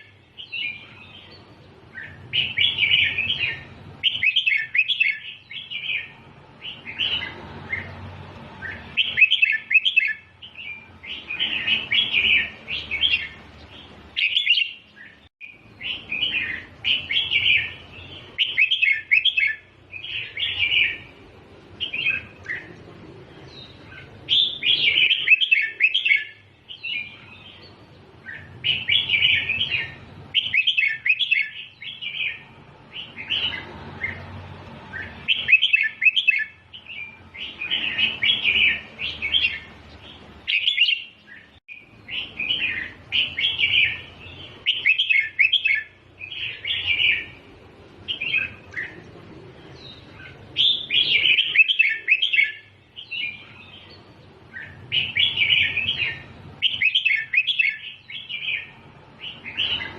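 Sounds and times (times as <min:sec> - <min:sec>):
bird singing chirpy whistles: 0:01.9 - 0:07.9, 0:08.6 - 0:13.4, 0:14.2 - 0:21.0, 0:24.3 - 0:27.5, 0:28.2 - 0:32.4, 0:34.9 - 0:39.7, 0:40.4 - 0:47.3, 0:50.6 - 0:53.7, 0:54.5 - 0:59.9.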